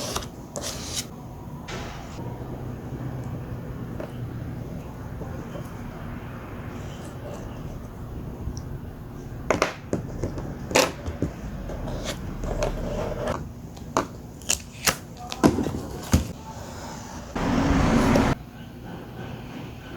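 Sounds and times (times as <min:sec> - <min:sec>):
paper rubbing rustle: 0:00.0 - 0:01.1.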